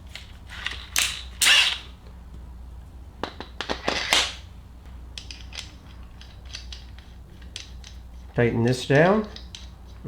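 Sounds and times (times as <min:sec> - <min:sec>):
steady low hum: 0:00.0 - 0:10.0
small metal parts clicking: 0:05.2 - 0:10.0.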